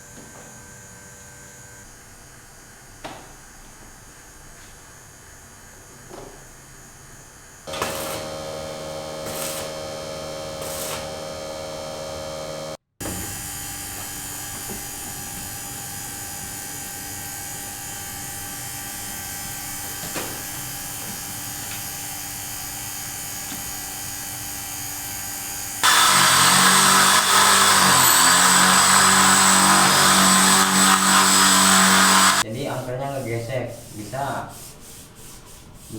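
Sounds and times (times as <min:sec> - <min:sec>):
machine humming: 0:07.7 - 0:12.8, 0:25.8 - 0:32.4
rough mechanical running: 0:07.7 - 0:12.8, 0:25.8 - 0:32.4.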